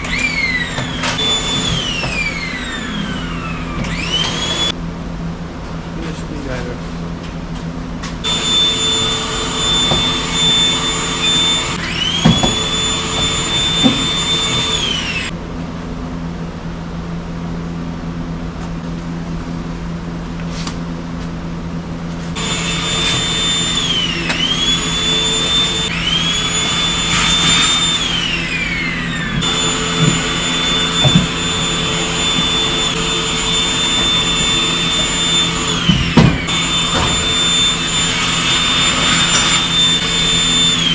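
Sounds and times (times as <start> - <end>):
shop vacuum whining: 0.0 - 4.8, 8.0 - 15.4, 22.1 - 40.9.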